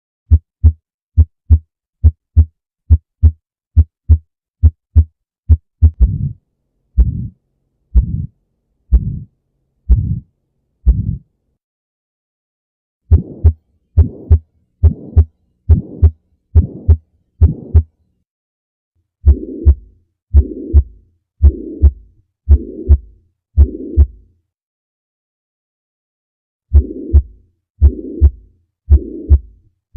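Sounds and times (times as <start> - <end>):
heartbeat through stethoscope: 0.3 - 6.4, 7.0 - 7.4, 8.0 - 8.3, 8.9 - 9.3, 9.9 - 11.2, 13.1 - 17.9, 19.2 - 24.2, 26.7 - 29.6
rushing heart murmur: 0.3 - 6.4, 7.0 - 7.4, 8.0 - 8.3, 8.9 - 9.3, 9.9 - 10.3, 10.9 - 11.2, 13.1 - 17.9, 19.2 - 24.2, 26.7 - 29.5.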